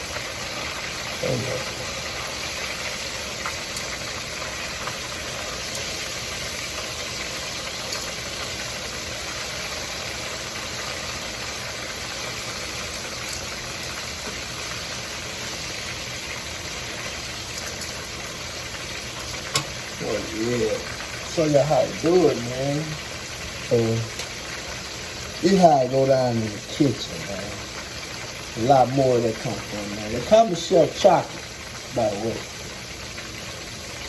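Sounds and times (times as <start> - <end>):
fish sizzling in hot oil: 0.0 - 34.0
oil popping: 0.1 - 28.6.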